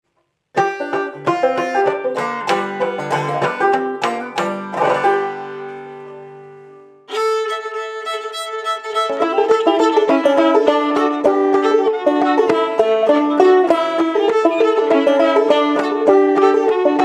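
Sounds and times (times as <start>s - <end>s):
banjo picking: 0.5s - 17.0s
fiddle bowed notes: 0.6s - 17.0s.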